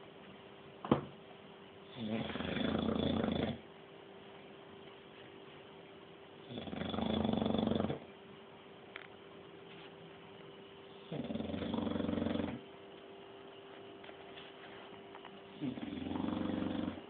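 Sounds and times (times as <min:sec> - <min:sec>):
faint steady hum: 0:00.0 - 0:17.0
person snoring: 0:01.9 - 0:03.6, 0:06.5 - 0:08.0, 0:11.1 - 0:12.6, 0:15.6 - 0:17.0.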